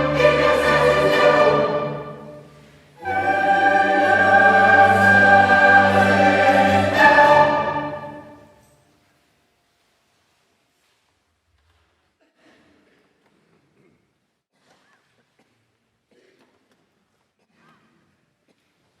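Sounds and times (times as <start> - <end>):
choir and orchestra sustaining chords: 0.0 - 8.6.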